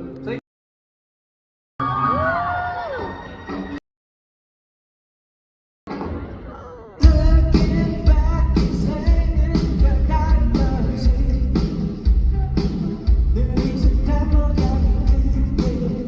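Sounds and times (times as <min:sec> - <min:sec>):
heavy low beat: 0:07.0 - 0:16.0
man singing: 0:07.0 - 0:16.0
pop-rock band playing: 0:07.0 - 0:16.0.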